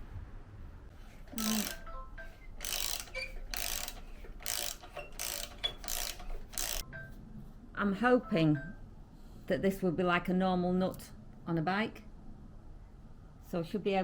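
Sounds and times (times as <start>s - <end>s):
short metallic strokes: 1.0s - 1.9s, 2.5s - 6.8s.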